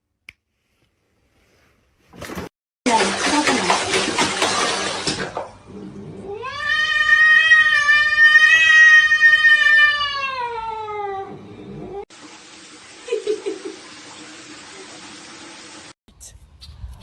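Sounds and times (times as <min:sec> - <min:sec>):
cat yowling: 0:06.3 - 0:12.0.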